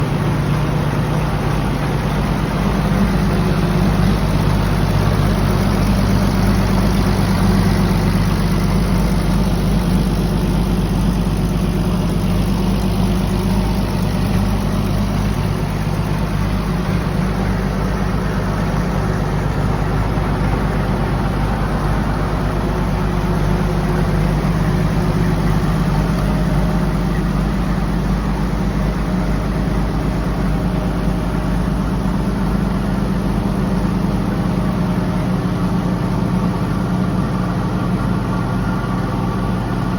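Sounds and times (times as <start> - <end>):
tractor engine idling: 0.0 - 39.9.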